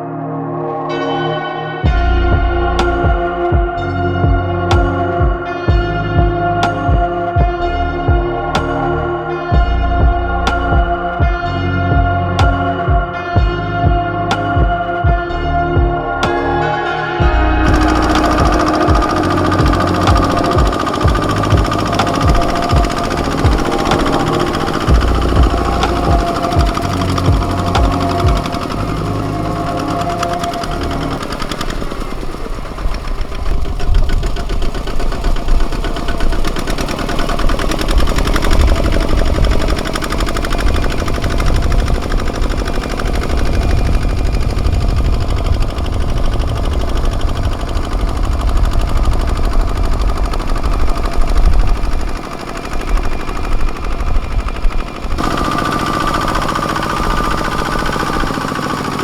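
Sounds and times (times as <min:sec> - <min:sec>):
diesel tractor engine chattering: 0:17.6 - 0:59.0.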